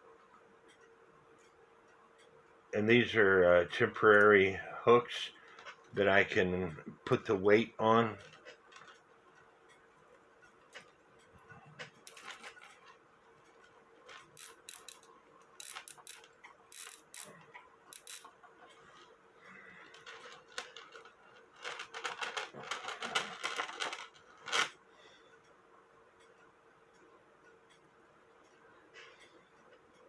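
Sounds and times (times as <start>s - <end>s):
faint steady hum: 0.0s - 30.0s
metal chain clinking and rattling: 12.1s - 13.0s, 14.1s - 17.4s, 18.0s - 18.3s, 19.9s - 24.7s.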